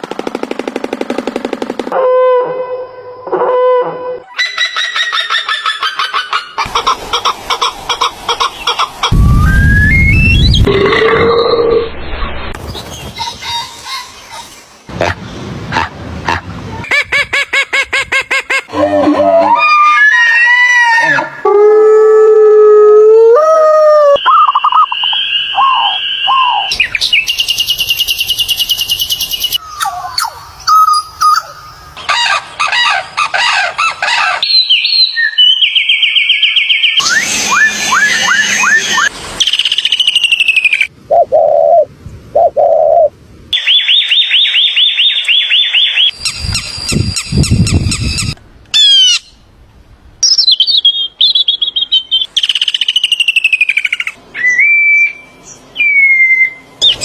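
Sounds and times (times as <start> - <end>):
bird calls: 24.2 - 49.4.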